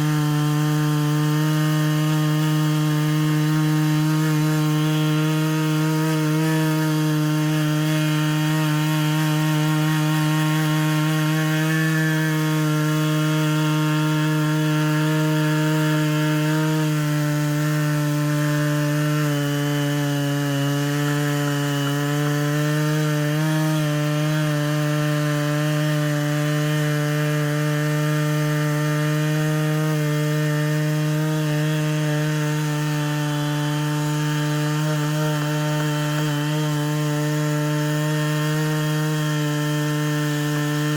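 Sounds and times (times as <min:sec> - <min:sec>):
chainsaw cutting log: 0:00.0 - 0:40.9.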